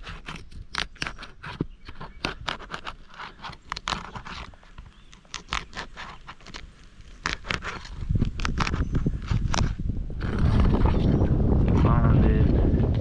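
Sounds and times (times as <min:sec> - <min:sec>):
roof shingle tearing loose: 0:00.0 - 0:11.0.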